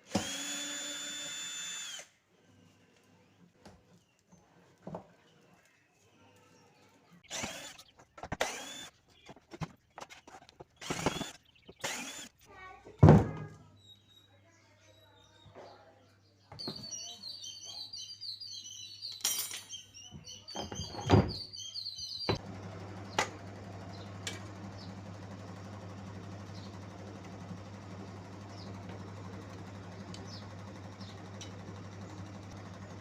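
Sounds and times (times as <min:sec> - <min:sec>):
washing machine humming: 0:22.3 - 0:33.0.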